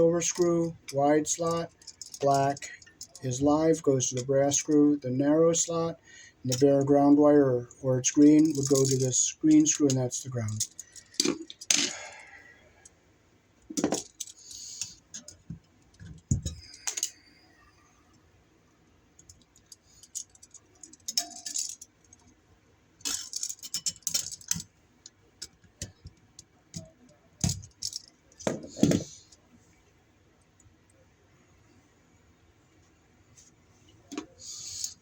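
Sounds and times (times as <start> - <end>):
metallic clicks and rattles: 0.2 - 4.8, 8.2 - 9.2, 9.8 - 12.0, 13.7 - 17.2, 19.2 - 22.4, 23.0 - 29.4.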